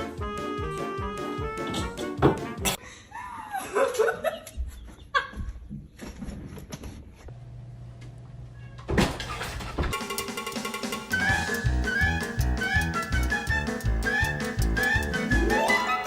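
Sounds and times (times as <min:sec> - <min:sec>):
loud music: 0:10.0 - 0:16.0.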